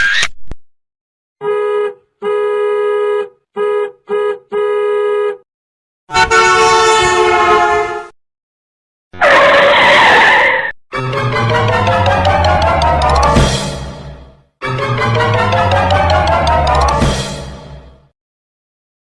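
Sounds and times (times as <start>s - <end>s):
car horn honking: 1.4s - 5.4s, 6.1s - 8.1s
horn-like blast with sliding tones: 6.1s - 8.1s.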